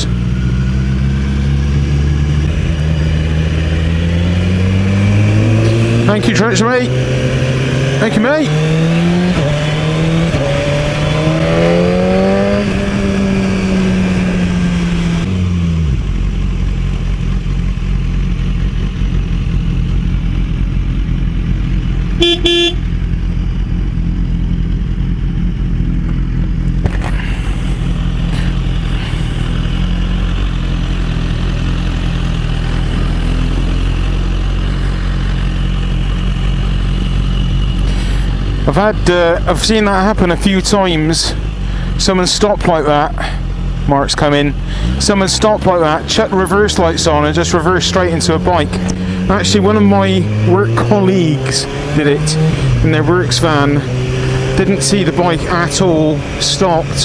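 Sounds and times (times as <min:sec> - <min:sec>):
motorcycle engine: 0:00.0 - 0:57.0
horn toot: 0:22.1 - 0:23.0.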